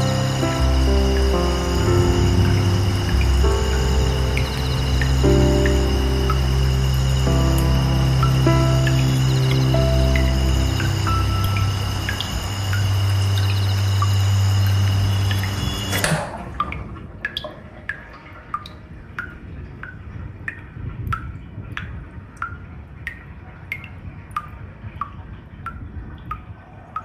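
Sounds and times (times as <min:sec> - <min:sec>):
music: 0:00.0 - 0:16.1
water dripping: 0:00.0 - 0:27.0.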